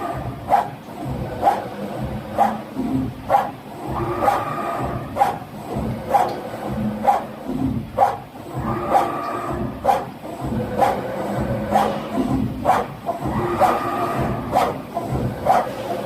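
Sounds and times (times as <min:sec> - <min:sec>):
machine cutting strokes: 0:00.0 - 0:16.0.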